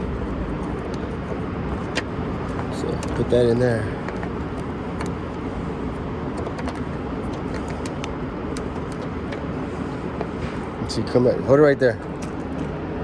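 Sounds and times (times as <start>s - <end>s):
low background rumble: 0.0s - 13.0s
clicks and taps of small parts: 1.9s - 3.2s, 4.0s - 5.2s, 6.3s - 9.5s.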